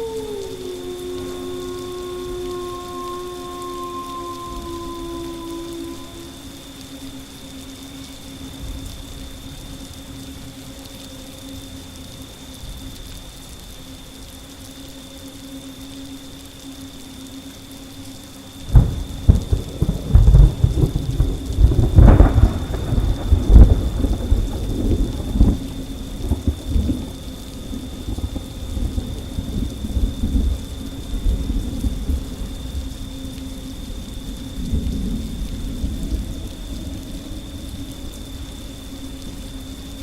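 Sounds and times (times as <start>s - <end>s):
thunder rumbling: 0.0s - 7.5s, 18.6s - 40.0s
steady rain: 0.0s - 40.0s.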